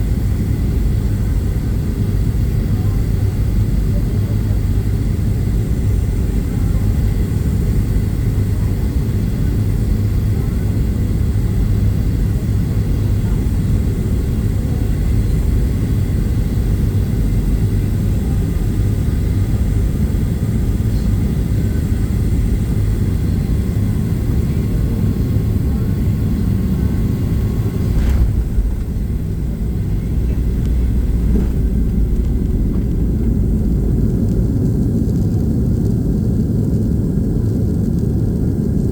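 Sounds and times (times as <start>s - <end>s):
airplane engines and airflow rumble: 0.0s - 38.9s
short thump: 27.3s - 34.6s.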